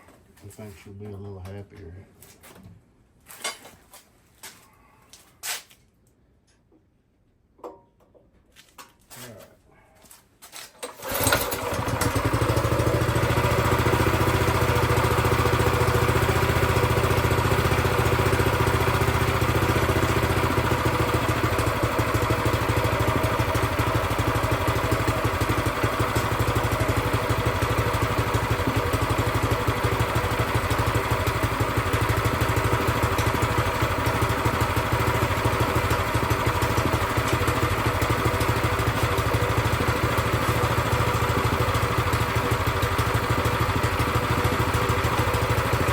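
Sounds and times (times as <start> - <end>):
plate compactor engine idling: 11.0 - 45.9.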